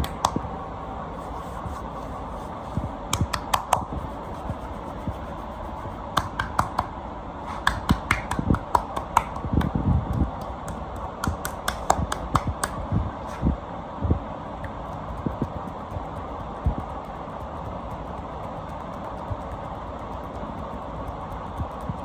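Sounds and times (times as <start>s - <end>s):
sharp clicks of back massage: 0.0s - 0.4s, 2.9s - 5.4s, 6.0s - 13.4s.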